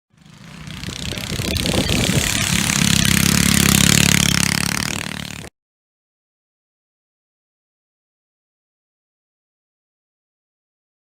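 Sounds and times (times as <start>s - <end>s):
small engine running: 0.1s - 5.5s.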